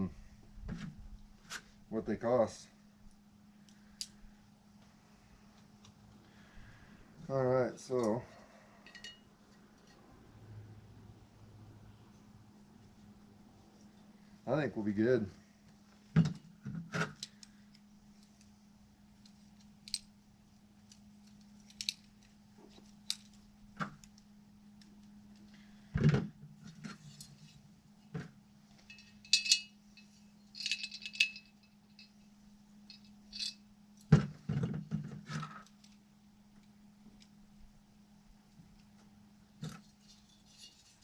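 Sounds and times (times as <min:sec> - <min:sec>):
steady low hum: 0:00.0 - 0:41.0
metal parts and tools clinking: 0:28.8 - 0:32.2, 0:32.9 - 0:33.6, 0:39.6 - 0:41.0
short metallic rings: 0:28.9 - 0:32.2.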